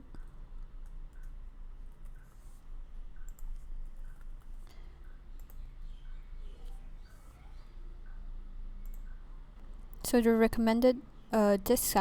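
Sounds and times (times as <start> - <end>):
computer keyboard and mouse clicks: 3.2 - 4.6, 5.4 - 5.7, 8.8 - 9.2.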